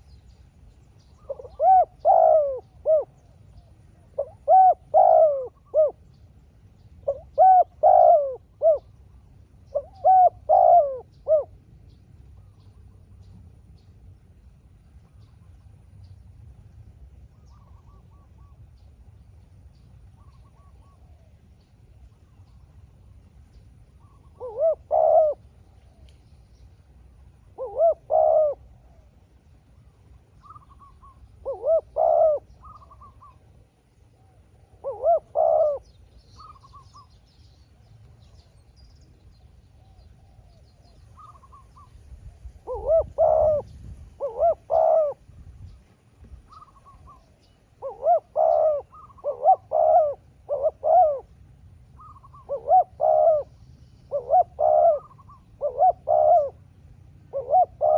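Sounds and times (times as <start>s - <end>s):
dove cooing: 1.2s - 6.1s, 7.0s - 9.0s, 9.7s - 11.6s, 20.2s - 21.4s, 24.0s - 26.0s, 27.4s - 29.3s, 30.4s - 37.1s, 39.9s - 41.9s, 42.5s - 45.3s, 46.5s - 51.4s, 52.0s - 57.9s.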